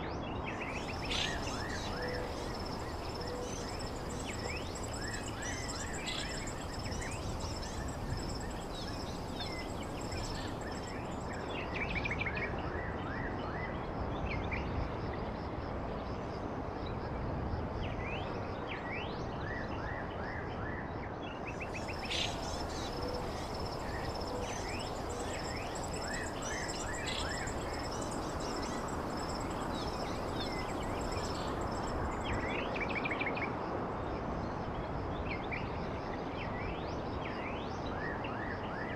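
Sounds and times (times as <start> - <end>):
small birds chirping: 0.6 - 11.4, 21.6 - 32.6
low background rush: 0.6 - 11.7, 21.6 - 33.0
insect trill: 0.6 - 12.3, 21.5 - 33.4.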